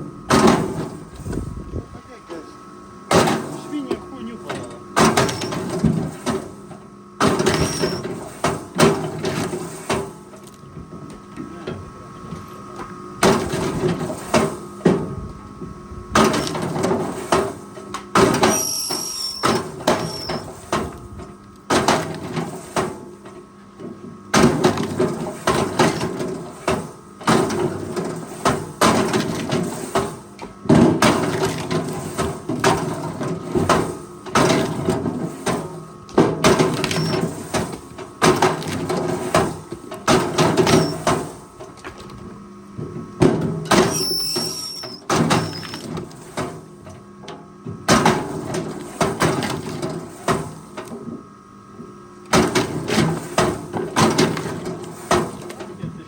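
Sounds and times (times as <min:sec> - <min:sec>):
machine engine and hydraulics hum: 0:00.0 - 0:56.0.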